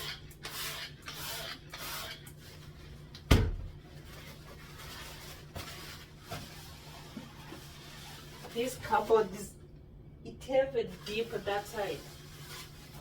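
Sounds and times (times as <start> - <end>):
rustling of handling and wiping: 2.0 - 9.5, 10.8 - 13.0.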